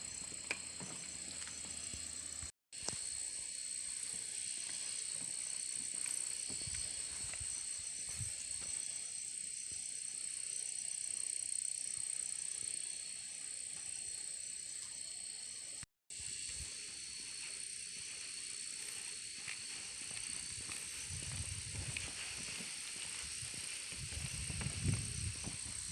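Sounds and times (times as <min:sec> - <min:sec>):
insects chirring: 0:00.0 - 0:25.9.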